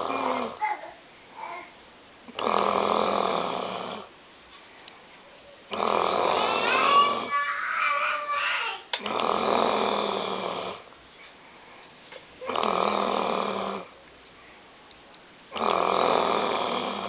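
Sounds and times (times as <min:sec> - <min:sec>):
woman snoring: 0:00.0 - 0:00.6, 0:02.3 - 0:04.1, 0:05.7 - 0:07.3, 0:09.1 - 0:10.8, 0:12.4 - 0:13.9, 0:15.6 - 0:17.0.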